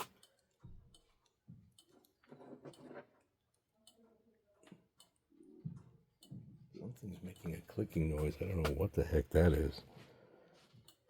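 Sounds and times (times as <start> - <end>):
faint irregular clicks: 0.0 - 4.0, 4.6 - 5.2.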